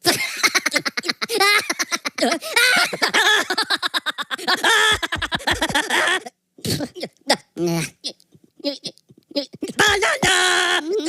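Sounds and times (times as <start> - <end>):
person talking animatedly: 7.6 - 8.2, 8.8 - 11.0.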